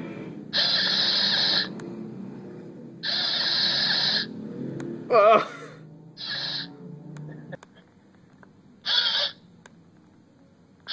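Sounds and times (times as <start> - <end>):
robot motors whirring: 0.6 - 1.8, 3.0 - 4.3
crow-like bird call: 8.9 - 9.4.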